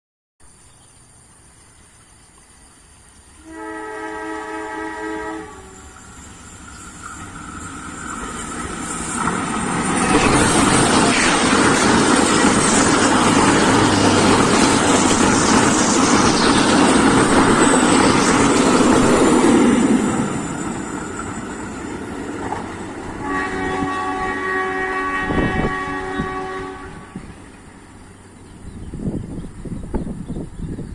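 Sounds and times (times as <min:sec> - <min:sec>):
train passing: 0:01.9 - 0:30.9
train horn: 0:03.4 - 0:06.0, 0:23.1 - 0:27.4.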